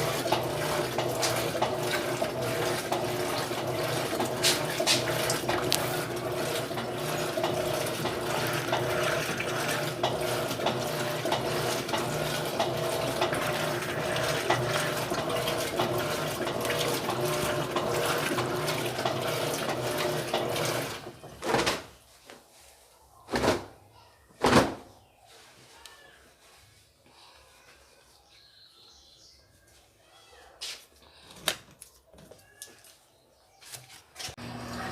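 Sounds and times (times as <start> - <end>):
washing machine churning water: 0.0 - 22.0, 34.3 - 34.9.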